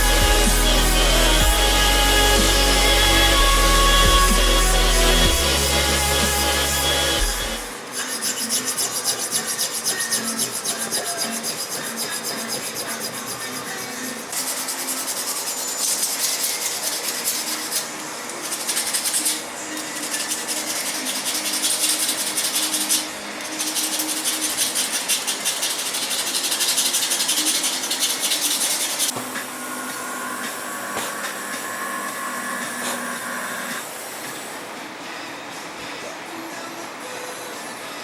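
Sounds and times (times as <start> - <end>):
abrasive rasping on knife handle: 7.9 - 29.1.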